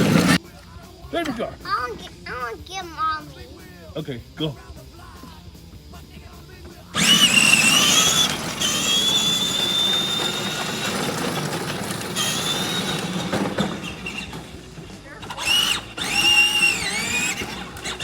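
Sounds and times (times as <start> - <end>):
toy car motor and gear whine: 0.0 - 0.4, 6.9 - 18.0.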